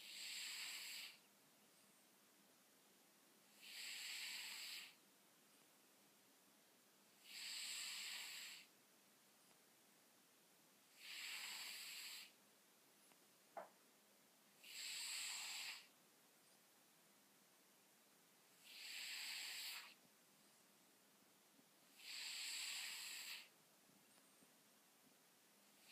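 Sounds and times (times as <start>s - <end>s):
cat snoring: 0.0s - 1.3s, 3.5s - 5.0s, 7.2s - 8.7s, 10.9s - 12.4s, 14.6s - 15.9s, 18.6s - 20.0s, 21.9s - 23.5s, 25.7s - 25.9s.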